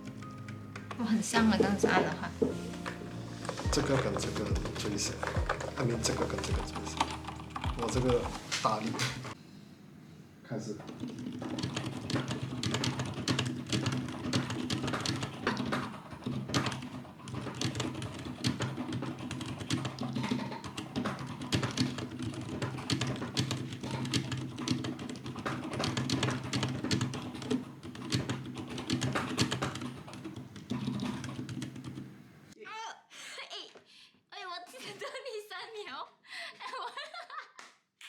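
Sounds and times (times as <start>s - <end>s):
typing on mechanical keyboard: 2.7s - 9.3s, 10.8s - 32.1s.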